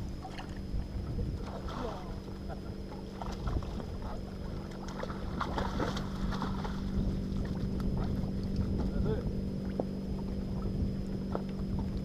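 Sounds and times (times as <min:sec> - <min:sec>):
boat motor humming: 0:00.0 - 0:12.0.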